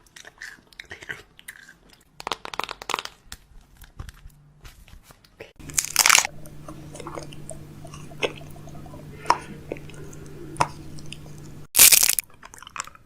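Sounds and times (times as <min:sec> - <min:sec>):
packaging crinkling and crunching: 0:05.6 - 0:06.3, 0:11.8 - 0:13.0
low steady hum: 0:05.6 - 0:13.0.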